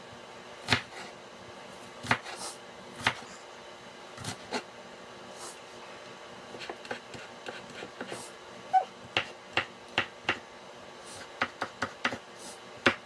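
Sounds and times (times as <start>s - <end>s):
knife chopping on cutting board: 0.6s - 1.1s, 2.0s - 2.4s, 3.0s - 3.2s, 6.5s - 8.2s, 9.0s - 10.4s, 11.2s - 12.2s, 12.8s - 13.0s.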